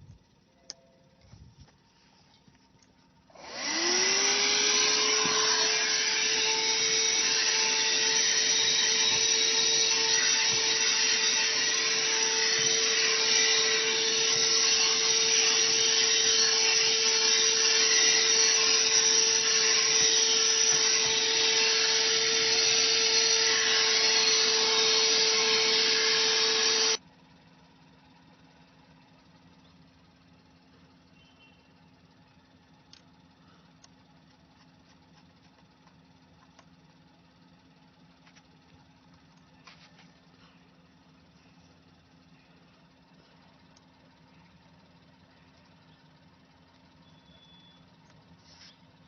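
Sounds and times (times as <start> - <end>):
vacuum motor whine: 3.3 - 27.0.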